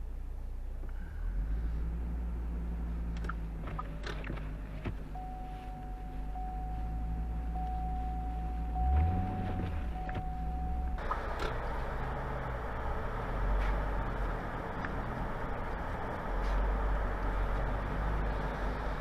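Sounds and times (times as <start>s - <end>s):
low rumble of traffic: 0.0s - 19.0s
steady high-pitched tone: 5.1s - 11.2s.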